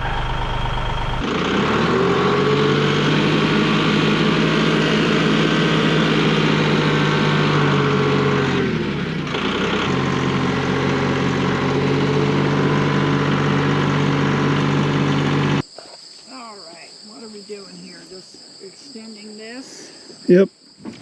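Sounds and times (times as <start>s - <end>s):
tractor engine running: 0.0s - 2.1s.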